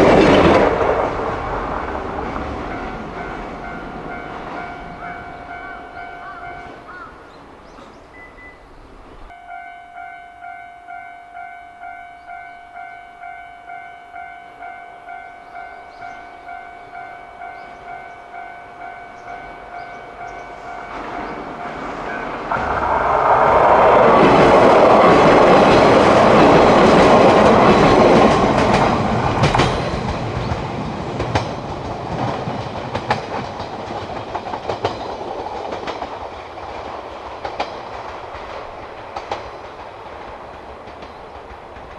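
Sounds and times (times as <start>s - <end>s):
train wheels rumbling and clattering: 0.0s - 7.0s, 18.7s - 41.9s
level crossing bell ringing: 9.3s - 22.3s.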